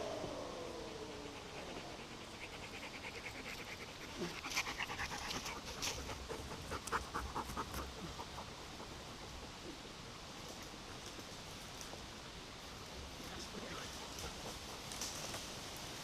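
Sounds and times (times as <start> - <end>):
faint falling whine: 0.0 - 2.1
dog panting: 1.2 - 9.8.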